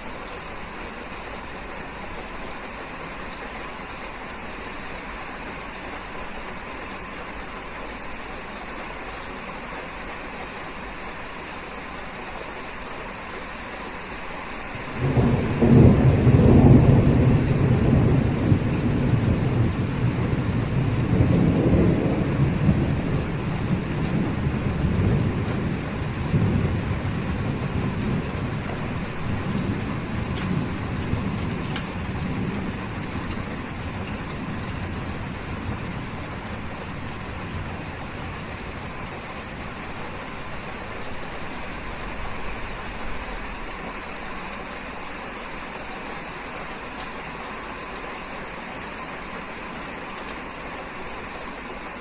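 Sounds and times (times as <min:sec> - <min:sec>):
steady rain: 0:00.0 - 0:52.0
thunder rumbling: 0:14.8 - 0:43.8.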